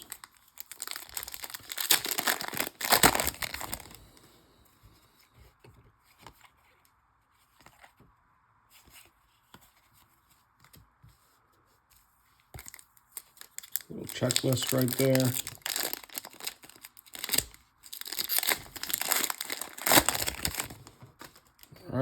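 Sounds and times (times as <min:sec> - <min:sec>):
foil wrapper tearing and crinkling: 0:00.0 - 0:04.0, 0:12.6 - 0:21.7.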